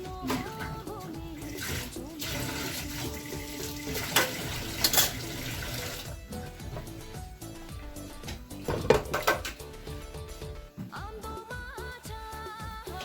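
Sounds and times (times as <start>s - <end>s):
background music with melody: 0.0s - 13.0s
water running: 0.2s - 9.8s.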